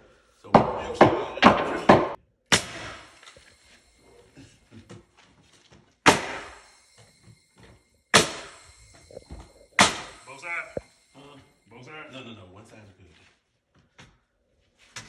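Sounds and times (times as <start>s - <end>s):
nailing strikes into wood: 0.6s - 3.2s, 6.1s - 6.6s, 8.2s - 8.6s.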